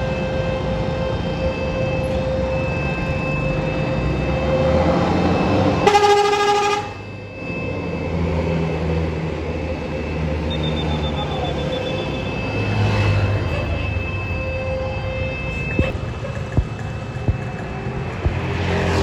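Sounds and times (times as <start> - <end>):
bus engine rumbling: 0.0 - 19.0
bus horn note: 5.8 - 7.1.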